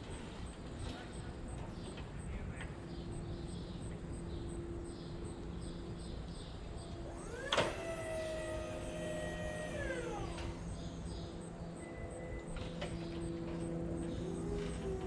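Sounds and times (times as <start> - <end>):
motor speeding up and winding down: 7.0 - 11.5, 13.0 - 15.0
motor click: 7.1 - 10.9.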